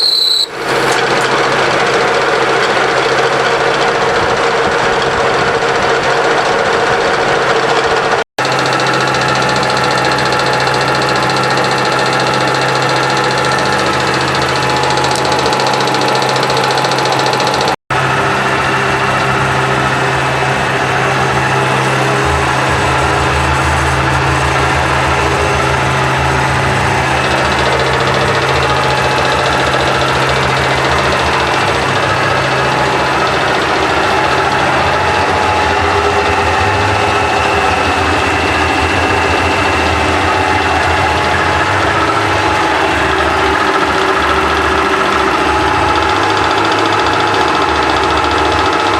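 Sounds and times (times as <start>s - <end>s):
metal lathe machining drone: 0.0s - 48.9s.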